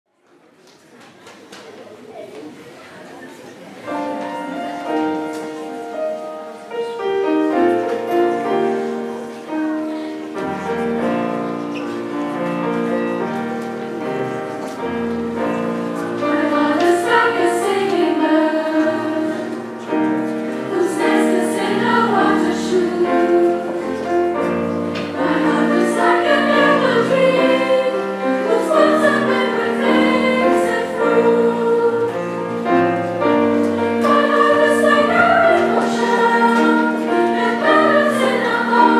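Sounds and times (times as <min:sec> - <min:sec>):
choir singing: 0:14.0 - 0:38.9.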